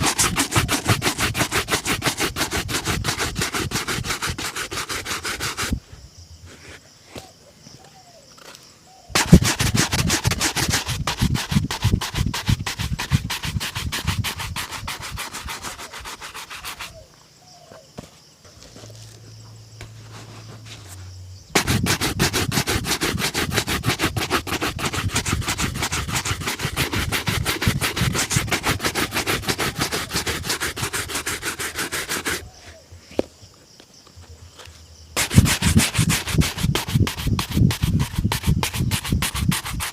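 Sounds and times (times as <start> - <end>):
shoe being buffed by hand: 0.0 - 5.8, 9.2 - 17.0, 21.6 - 32.7, 35.2 - 39.9.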